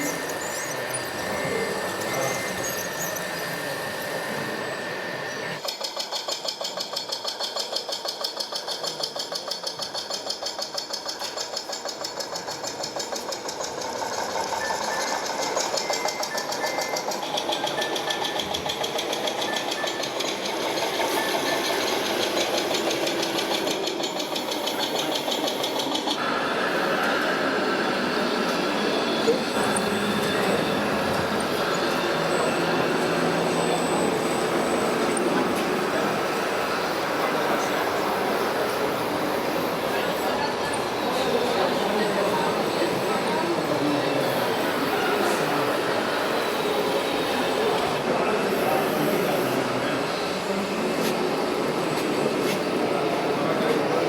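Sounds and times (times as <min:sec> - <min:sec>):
model vehicle motors clattering: 0:00.0 - 0:26.2.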